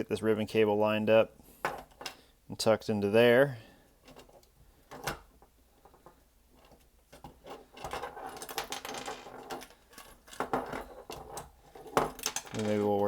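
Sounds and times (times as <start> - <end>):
plastic parts clicking and rattling: 4.1 - 13.0.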